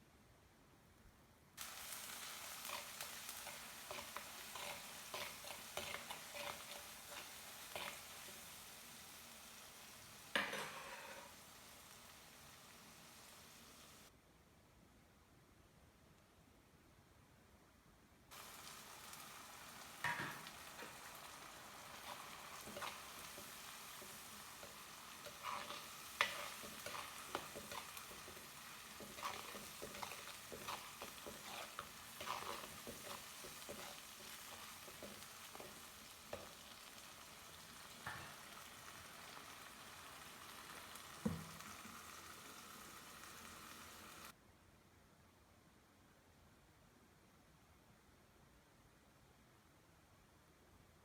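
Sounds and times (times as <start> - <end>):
spoon scraping a pan: 1.6 - 8.6, 10.3 - 11.5, 20.0 - 37.2
food sizzling in hot oil: 1.6 - 14.1, 18.3 - 44.4.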